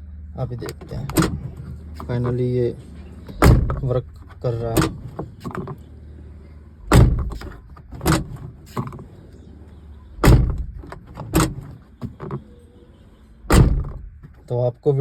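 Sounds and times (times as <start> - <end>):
car door shutting with a clunk: 0.6 - 5.9, 6.8 - 9.4, 10.2 - 12.5, 13.5 - 14.5.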